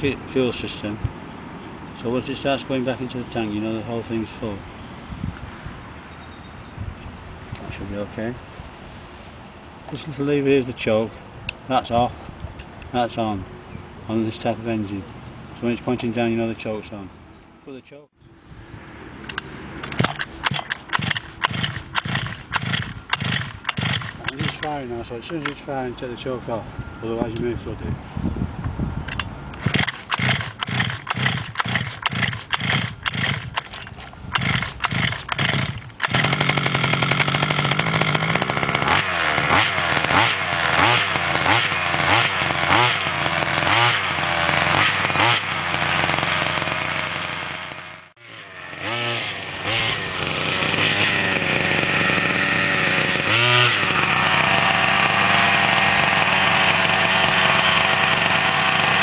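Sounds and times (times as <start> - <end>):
small two-stroke engine revving: 19.8 - 24.8, 29.6 - 59.0.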